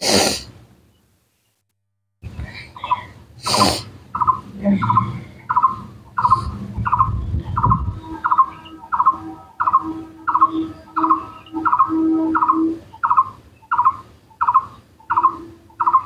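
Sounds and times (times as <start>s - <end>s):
bird-like chirping call: 2.8s - 16.0s
low pulsing tone: 4.1s - 13.2s.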